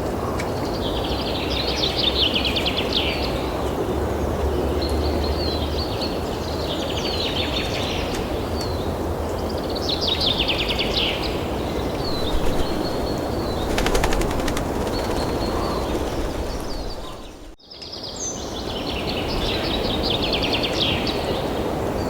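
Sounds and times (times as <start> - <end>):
birds chirping: 12.0 - 17.6.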